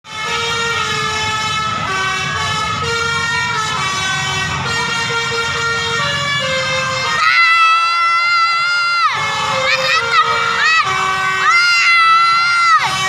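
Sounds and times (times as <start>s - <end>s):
musical air horn tune: 0.1s - 7.2s.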